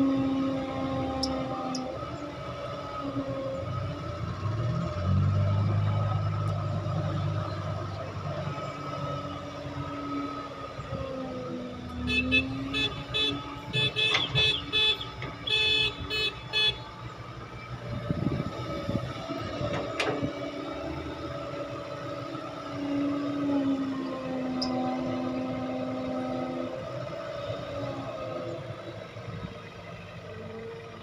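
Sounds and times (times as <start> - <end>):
engine running: 0.0 - 31.0
vehicle horn toots: 11.9 - 16.9.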